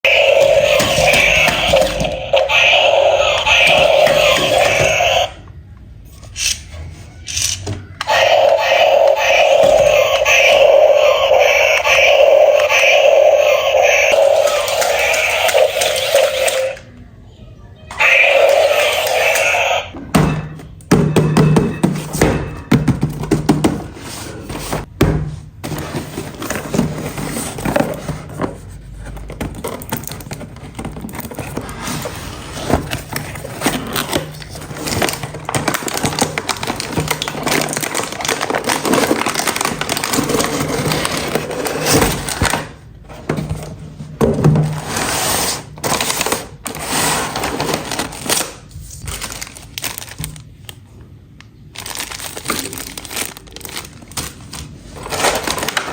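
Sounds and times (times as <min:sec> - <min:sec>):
hands handling plastic toy: 0:25.6 - 0:43.8.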